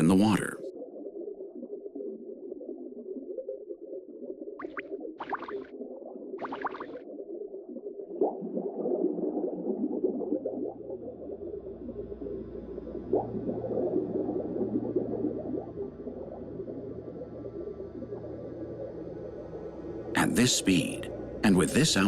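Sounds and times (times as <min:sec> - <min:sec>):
crackling underwater texture: 0:00.8 - 0:20.1
low steady hum: 0:11.2 - 0:22.0.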